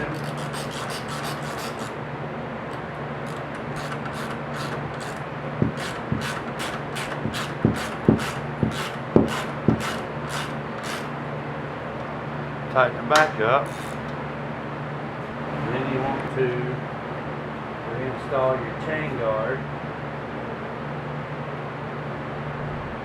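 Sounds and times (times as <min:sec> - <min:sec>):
sharp metal knocks: 0:03.3 - 0:11.1
socket wrench clicking: 0:03.3 - 0:11.1.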